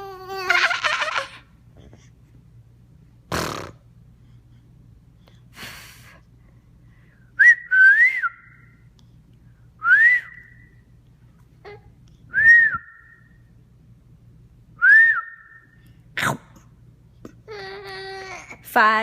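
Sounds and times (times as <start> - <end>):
rising whistles: 7.4 - 8.8, 9.8 - 10.8, 12.3 - 13.4, 14.8 - 15.8.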